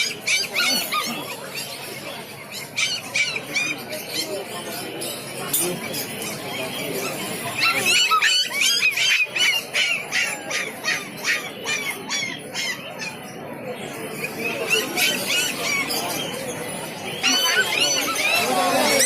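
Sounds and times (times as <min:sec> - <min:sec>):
birds squawking: 0:00.0 - 0:19.0.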